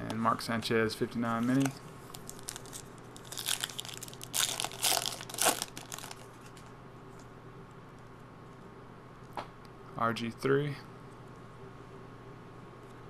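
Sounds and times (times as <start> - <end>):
plastic wrapper crinkling: 1.3 - 6.7.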